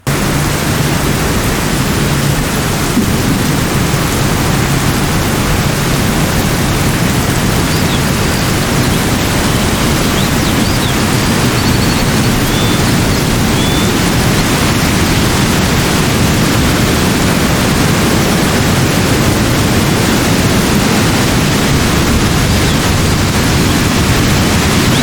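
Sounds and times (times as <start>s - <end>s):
steady rushing ambience: 0.0s - 25.0s
faint bird chirps: 7.6s - 8.2s, 8.8s - 14.0s.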